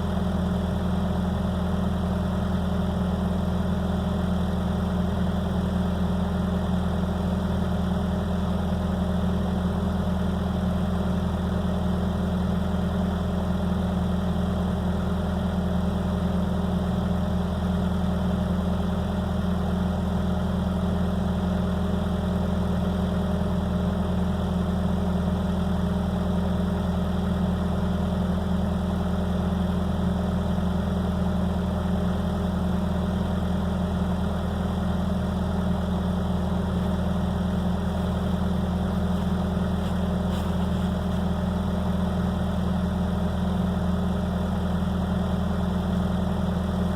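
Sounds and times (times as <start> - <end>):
skid steer engine running: 0.0 - 46.9.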